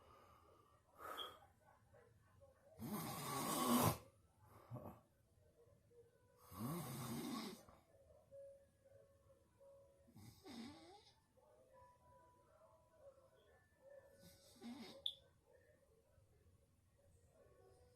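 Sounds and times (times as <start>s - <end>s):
loud snoring: 2.8s - 4.0s, 6.5s - 7.6s, 10.2s - 11.1s, 14.4s - 15.0s.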